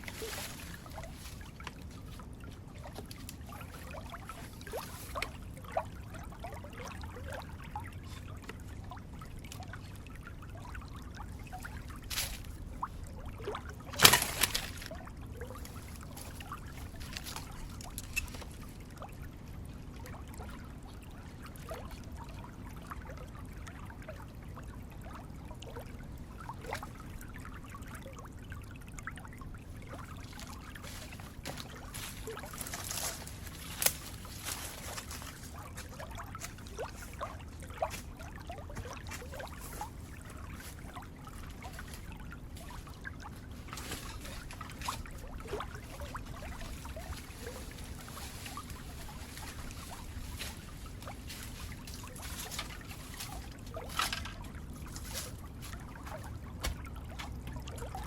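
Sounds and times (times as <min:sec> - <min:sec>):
water drips: 0:00.0 - 0:58.0
water trickling and splashing: 0:00.0 - 0:58.0
sharp splash or knock: 0:13.9 - 0:14.9.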